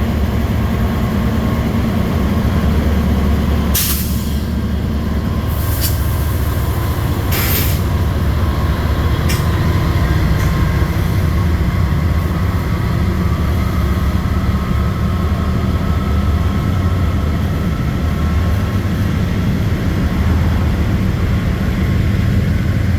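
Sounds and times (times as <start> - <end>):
train rumbling over viaduct: 0.0 - 22.9
air hisses: 3.8 - 4.6, 5.5 - 7.9.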